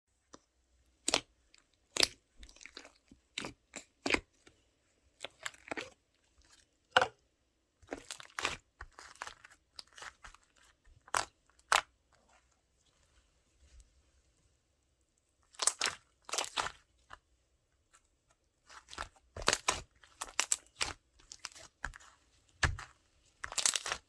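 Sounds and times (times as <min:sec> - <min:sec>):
slime squishing: 0:01.0 - 0:04.5, 0:07.8 - 0:13.1, 0:15.5 - 0:17.3, 0:18.6 - 0:24.0
slime crackling and popping: 0:15.6 - 0:16.8, 0:18.8 - 0:22.0, 0:22.6 - 0:24.0.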